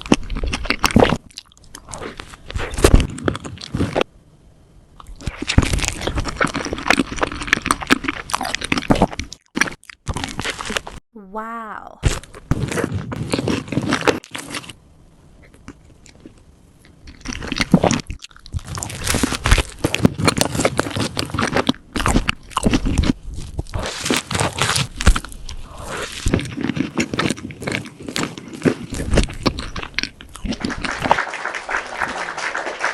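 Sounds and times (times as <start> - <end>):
chewing cake: 0.0 - 4.1, 5.0 - 11.0, 12.0 - 14.8, 15.4 - 32.9.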